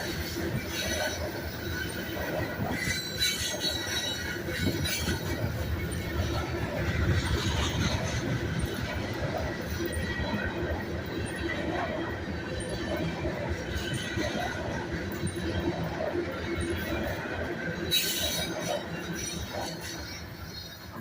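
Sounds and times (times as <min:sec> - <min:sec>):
train wheels rumbling on rail: 0:00.0 - 0:21.0
wheel squeal: 0:17.9 - 0:21.0.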